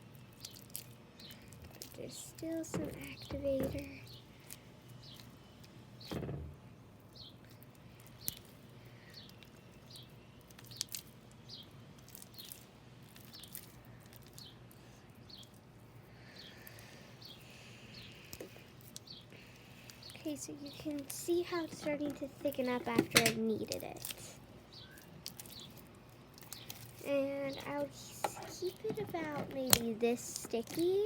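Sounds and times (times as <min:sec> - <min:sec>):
sticky slime squelching by hand: 0:00.0 - 0:05.8, 0:07.3 - 0:15.9, 0:16.5 - 0:31.0
bird chirping: 0:24.7 - 0:31.0.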